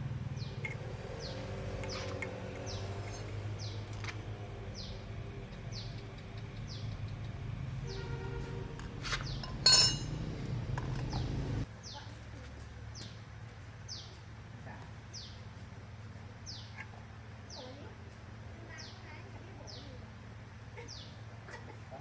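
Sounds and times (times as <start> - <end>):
bird chirping: 0.4 - 7.0, 9.1 - 12.1, 13.9 - 14.2, 16.4 - 17.7
metallic clank: 9.1 - 11.2.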